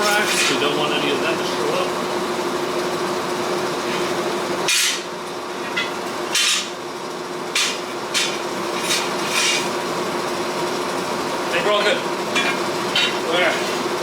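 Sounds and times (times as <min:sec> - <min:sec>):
burning forge noise: 0:00.0 - 0:14.0
hammer striking hot steel: 0:04.7 - 0:06.7, 0:07.5 - 0:09.7.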